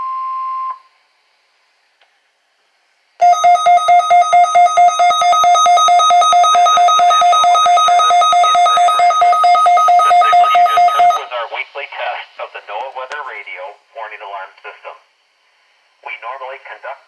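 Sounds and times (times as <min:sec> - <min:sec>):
pulsing two-tone alarm beep: 0:03.2 - 0:11.3.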